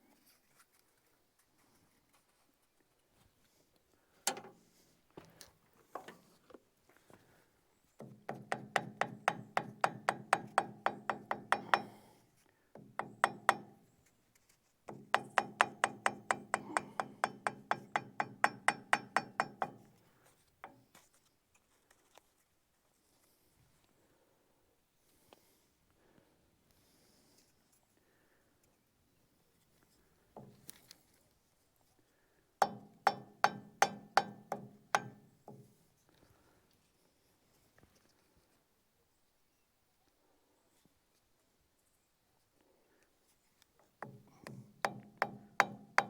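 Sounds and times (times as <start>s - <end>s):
hammer tapping on metal: 8.0s - 12.1s, 12.8s - 13.9s, 14.9s - 19.9s, 32.6s - 35.7s, 44.0s - 46.0s.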